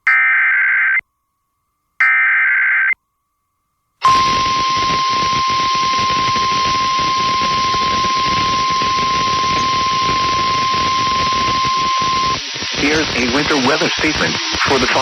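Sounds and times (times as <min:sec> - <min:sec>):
steady alarm tone: 0:00.0 - 0:01.0, 0:02.0 - 0:03.0, 0:04.0 - 0:15.0
static hiss: 0:04.0 - 0:15.0.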